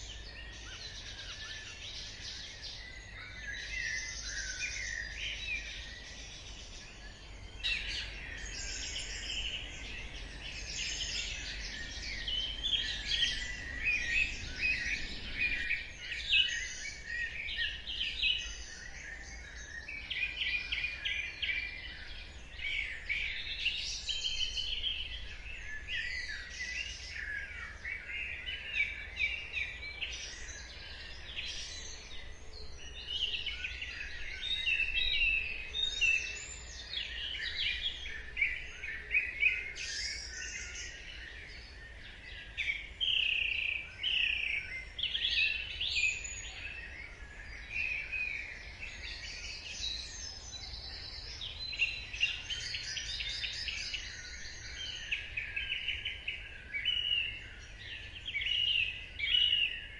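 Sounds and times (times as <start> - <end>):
songbirds singing: 0.0 - 59.9.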